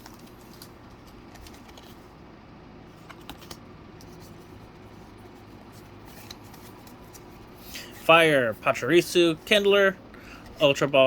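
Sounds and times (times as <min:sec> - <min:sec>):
cards clicking and rustling: 0:00.0 - 0:02.2, 0:02.9 - 0:08.0
steady low hum: 0:00.0 - 0:11.0.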